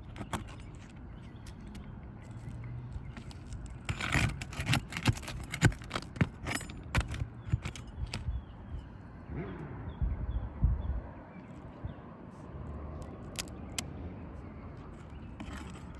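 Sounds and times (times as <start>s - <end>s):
irregular clicks and knocks: 0.0s - 8.3s.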